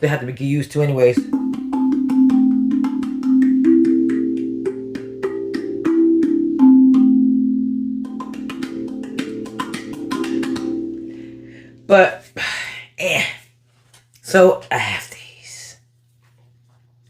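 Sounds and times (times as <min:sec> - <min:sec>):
steel tongue drum notes: 0:00.8 - 0:12.1.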